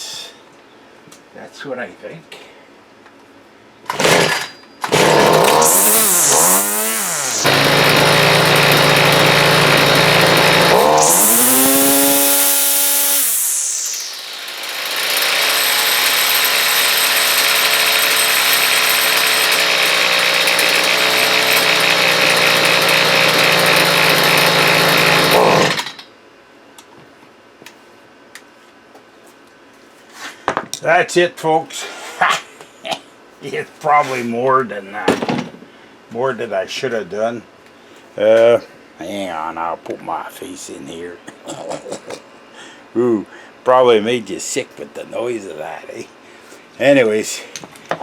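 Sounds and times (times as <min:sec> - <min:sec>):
string trimmer engine revving: 0:04.9 - 0:25.9.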